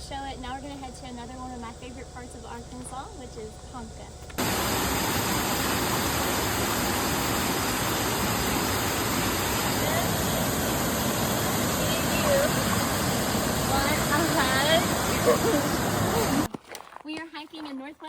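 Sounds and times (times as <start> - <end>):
waterfall rushing: 4.4 - 16.5.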